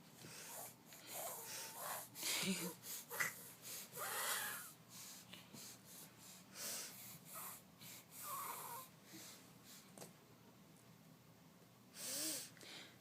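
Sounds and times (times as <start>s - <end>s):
sniffling and snorting breaths: 0.2s - 10.0s.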